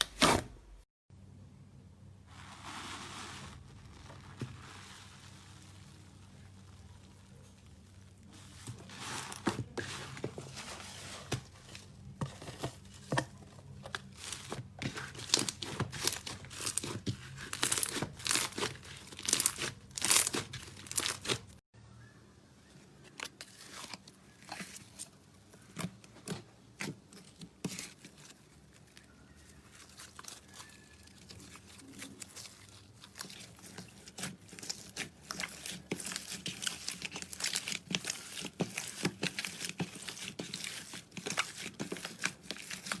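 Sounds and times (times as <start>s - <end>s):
slime crackling and popping: 14.8s - 21.5s, 29.7s - 43.0s.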